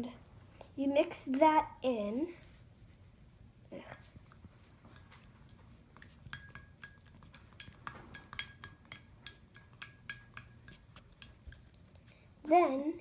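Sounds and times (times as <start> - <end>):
utensil clinking against bowl: 4.8 - 11.8.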